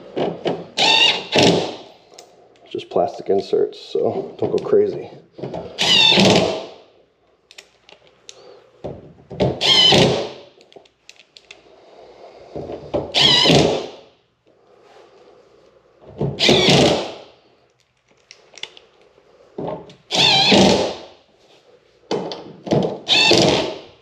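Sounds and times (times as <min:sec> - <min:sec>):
impact gun driving screws: 0:00.2 - 0:01.9, 0:05.8 - 0:06.8, 0:09.4 - 0:10.5, 0:13.0 - 0:14.0, 0:16.4 - 0:17.2, 0:20.0 - 0:21.1, 0:22.2 - 0:23.9.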